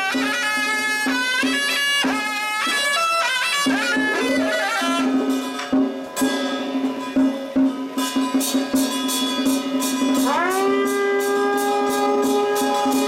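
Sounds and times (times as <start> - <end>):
wind instrument melody: 0.0 - 5.9, 9.9 - 13.0
percussion striking: 0.0 - 13.0.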